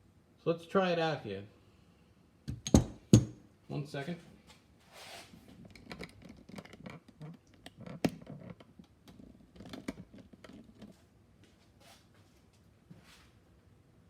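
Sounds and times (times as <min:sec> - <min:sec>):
tools handled on a bench: 0:02.5 - 0:03.4, 0:05.4 - 0:11.1.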